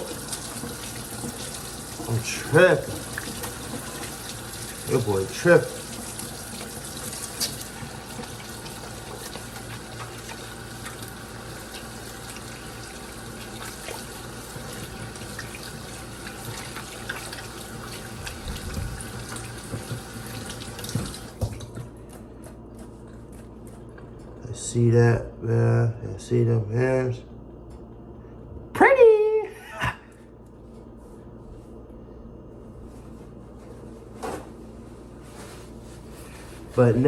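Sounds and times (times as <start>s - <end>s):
tap water running into sink: 0.0s - 21.9s
hands washing with splashes: 0.0s - 23.9s.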